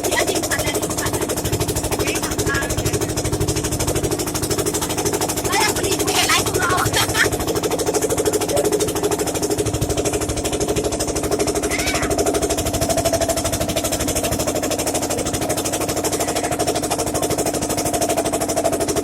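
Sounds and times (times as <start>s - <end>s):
motorboat engine chugging: 0.0s - 19.0s.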